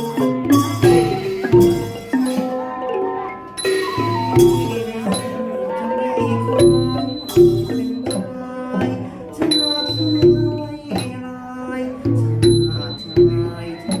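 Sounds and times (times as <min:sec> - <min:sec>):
classical ensemble music: 0:00.0 - 0:09.4
drum strokes: 0:00.0 - 0:11.4, 0:12.0 - 0:14.0
ringing metal percussion: 0:00.0 - 0:14.0.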